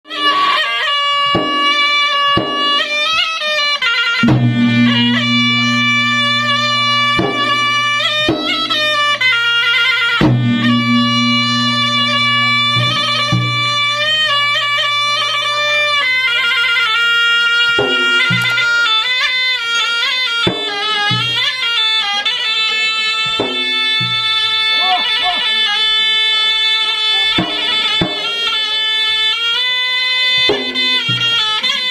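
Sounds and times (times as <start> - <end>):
reedy shawm melody: 0.0 - 31.9
drum strokes: 1.3 - 2.9, 4.2 - 16.2, 17.6 - 18.8, 27.4 - 28.6, 30.4 - 31.4
deep low drone: 4.2 - 9.2, 10.3 - 15.7.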